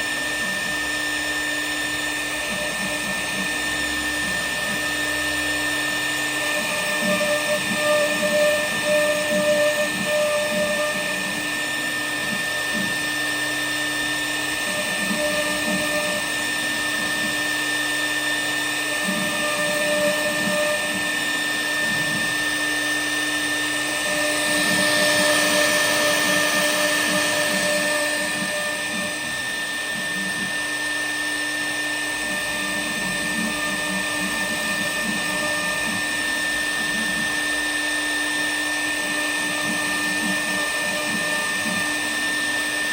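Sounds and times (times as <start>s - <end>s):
router spindle whine: 0.0s - 42.9s.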